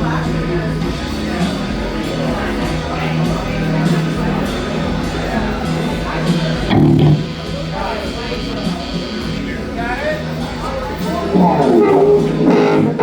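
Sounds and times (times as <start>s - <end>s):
music over pa: 0.0s - 13.0s
people talking: 0.0s - 13.0s
held low note: 6.5s - 9.4s.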